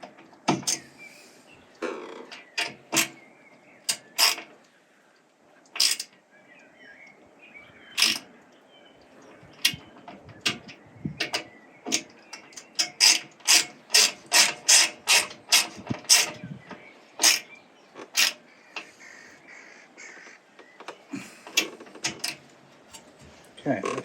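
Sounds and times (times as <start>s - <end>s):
ratchet wrench clicking: 5.8s - 6.1s, 12.6s - 16.3s.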